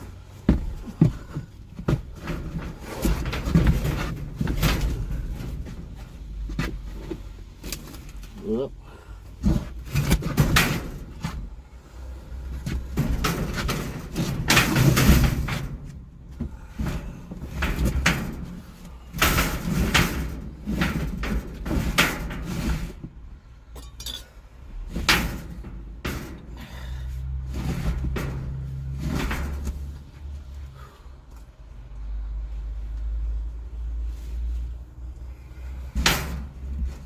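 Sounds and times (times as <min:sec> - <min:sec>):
hard objects knocking and clanking: 0:00.1 - 0:07.2, 0:12.6 - 0:29.7.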